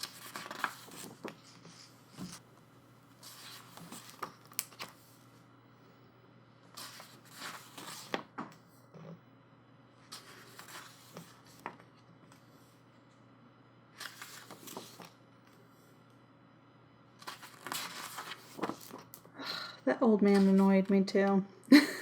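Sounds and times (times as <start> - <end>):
book pages rustling: 0.0 - 2.4, 3.1 - 5.3, 6.8 - 8.4, 10.1 - 12.5, 14.0 - 15.2, 17.2 - 19.2, 20.3 - 20.8.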